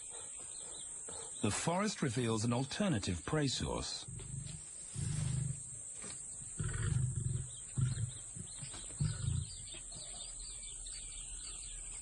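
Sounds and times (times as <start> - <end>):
lion grunting: 4.0 - 5.7, 6.5 - 9.7.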